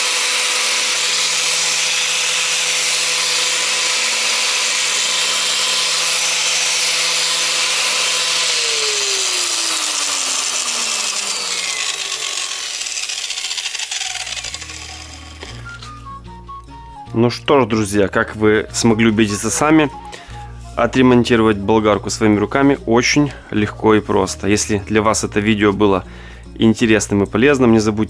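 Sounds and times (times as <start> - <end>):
angle grinder running: 0.0 - 16.1
grinder winding down: 0.0 - 16.2.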